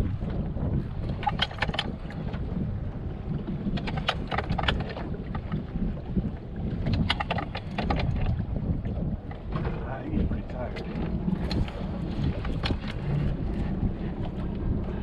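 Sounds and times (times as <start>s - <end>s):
wind buffeting microphone: 0.0s - 15.0s
low engine rumble: 7.5s - 15.0s.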